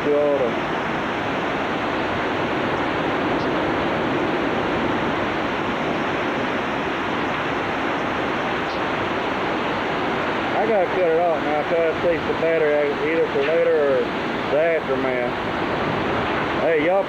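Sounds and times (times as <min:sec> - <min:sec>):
floodwater rushing: 0:00.0 - 0:17.0
wind and rain rushing: 0:00.0 - 0:17.0.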